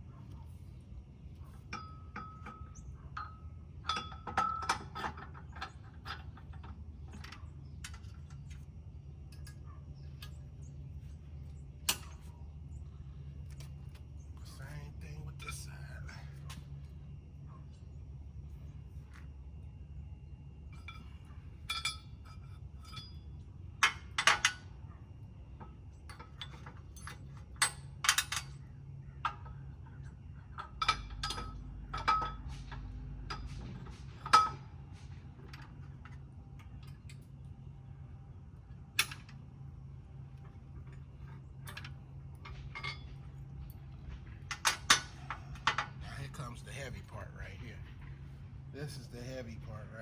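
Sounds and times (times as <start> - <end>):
metal parts clinking and clanking: 1.6 - 10.5, 20.7 - 24.8, 25.6 - 37.3, 40.3 - 46.4.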